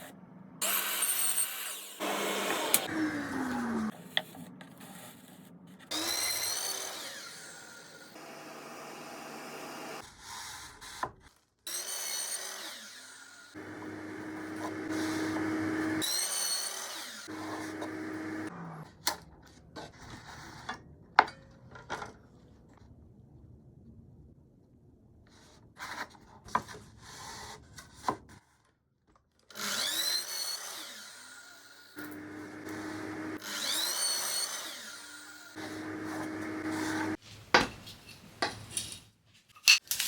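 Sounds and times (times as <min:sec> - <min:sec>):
electric drill whining: 0:00.6 - 0:03.9.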